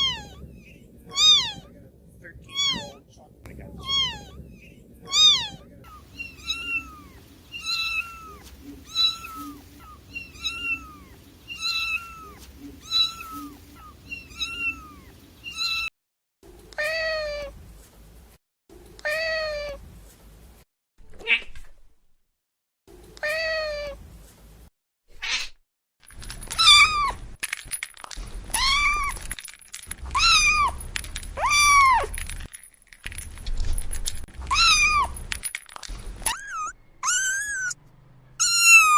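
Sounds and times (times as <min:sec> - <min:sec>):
kittens meowing: 0:00.0 - 0:00.5, 0:01.1 - 0:01.7, 0:02.5 - 0:03.0, 0:03.8 - 0:04.4, 0:05.1 - 0:15.9, 0:30.1 - 0:30.8, 0:31.4 - 0:32.1, 0:34.4 - 0:35.2, 0:36.2 - 0:37.8, 0:38.4 - 0:38.9.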